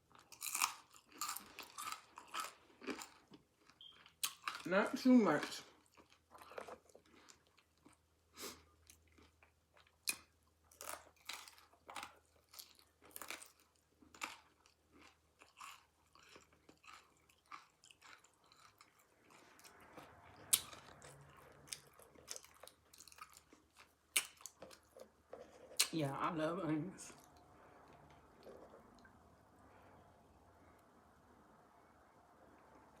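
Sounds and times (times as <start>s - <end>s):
chewing with lip smacks: 5.7s - 25.9s, 27.2s - 29.2s
faint steady noise: 14.8s - 33.0s.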